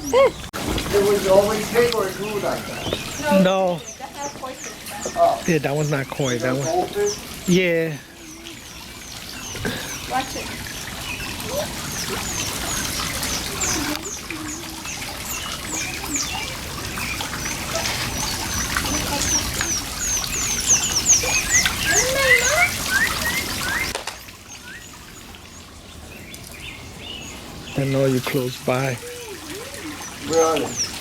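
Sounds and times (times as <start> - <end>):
water trickling in pond: 0.0 - 31.0
high-pitched bird chirps: 11.2 - 24.0.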